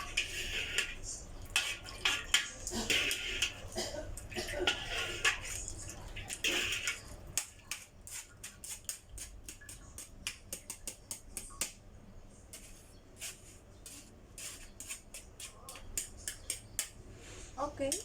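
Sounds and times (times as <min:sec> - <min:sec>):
utensils and dishes clicking: 0:14.4 - 0:17.0.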